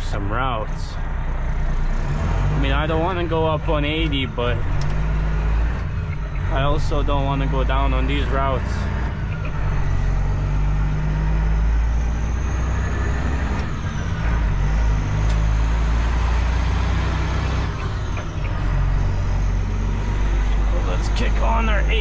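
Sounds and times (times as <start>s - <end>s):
diesel truck engine drone: 0.0s - 22.0s.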